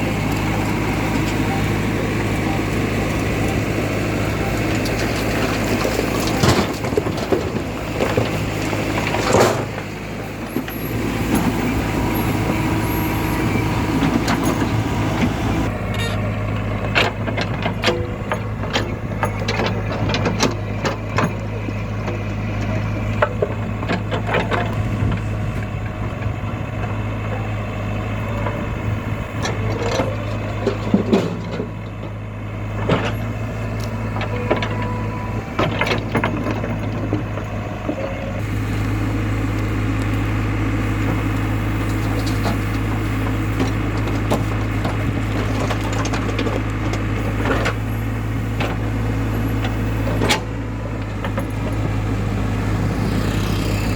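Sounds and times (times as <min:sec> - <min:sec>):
backhoe diesel engine running: 0:00.0 - 0:53.9
clanks and knocks: 0:04.7 - 0:09.9, 0:16.8 - 0:25.3, 0:29.4 - 0:32.2, 0:32.8 - 0:38.0, 0:43.6 - 0:47.8.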